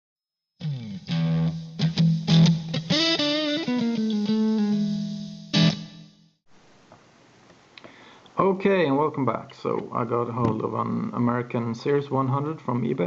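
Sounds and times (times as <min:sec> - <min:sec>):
electric guitar riff: 0:00.6 - 0:06.1.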